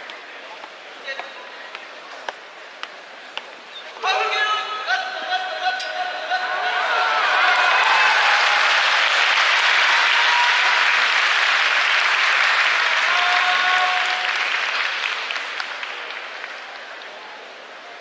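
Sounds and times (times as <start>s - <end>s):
crowd applauding and cheering: 6.4s - 17.6s.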